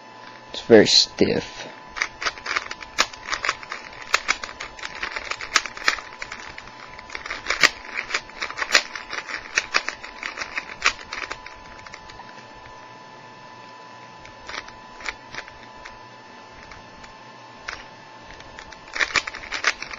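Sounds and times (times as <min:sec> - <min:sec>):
puzzle cube plastic clicks: 0:01.9 - 0:12.3, 0:14.2 - 0:16.0, 0:16.6 - 0:19.9.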